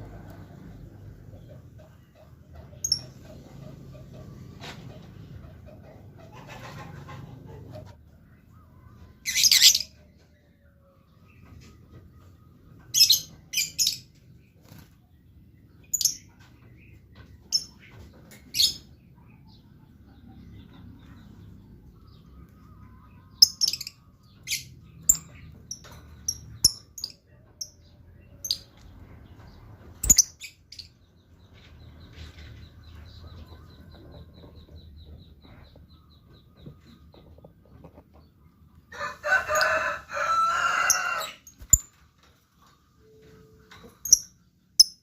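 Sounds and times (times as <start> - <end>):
lovebirds twittering and chattering: 1.3 - 42.3, 43.7 - 45.0
lovebirds chirping: 8.4 - 10.4, 11.0 - 42.0.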